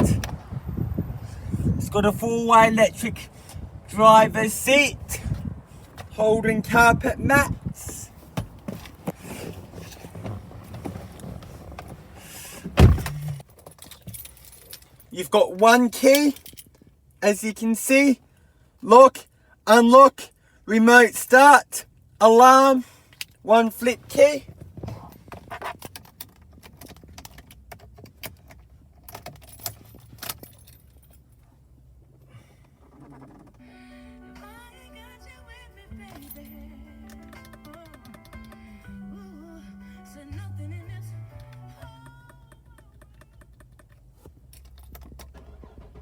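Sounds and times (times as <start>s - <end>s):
car keys jangling: 7.8s - 17.0s, 23.1s - 31.6s, 36.0s - 38.6s, 43.6s - 45.8s
loud short thump: 12.6s - 13.4s.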